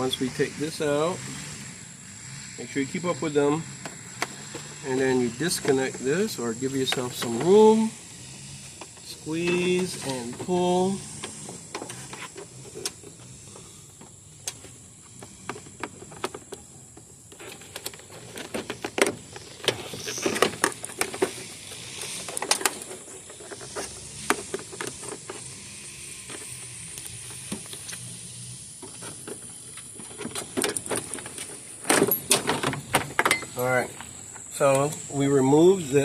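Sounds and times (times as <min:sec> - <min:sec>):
plastic clicks and scrapes: 0:17.3 - 0:28.0.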